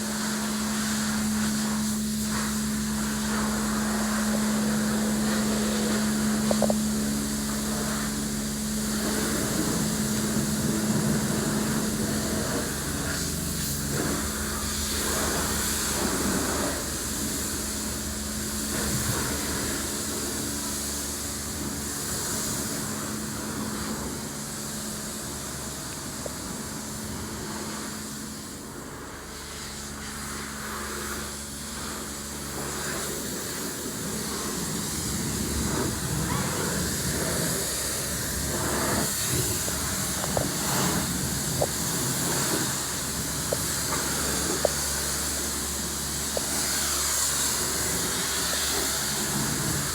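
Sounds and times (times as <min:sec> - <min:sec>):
low hum: 0:00.0 - 0:27.6
high-pressure water spraying: 0:00.0 - 0:49.9.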